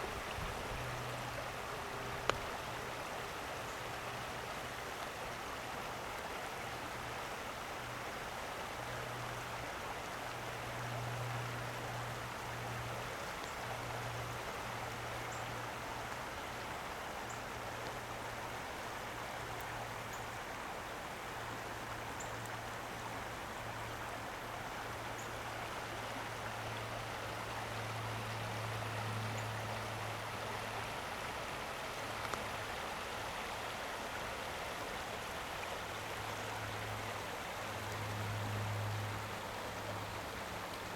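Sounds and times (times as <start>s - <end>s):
creek water flowing over rocks: 0.0s - 40.9s
faint high ticks: 2.2s - 2.8s, 32.1s - 32.6s.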